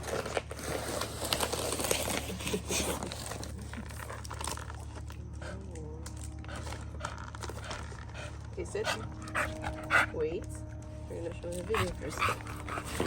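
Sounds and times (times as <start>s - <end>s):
packaging crinkling and rustling: 0.0s - 5.4s, 6.0s - 9.2s.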